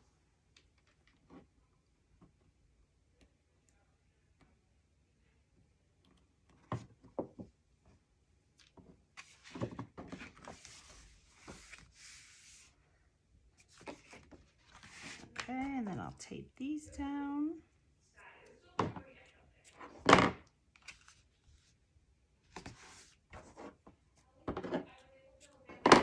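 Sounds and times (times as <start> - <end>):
paper rustling and sliding: 9.2 - 12.8, 13.6 - 15.5, 22.5 - 23.8.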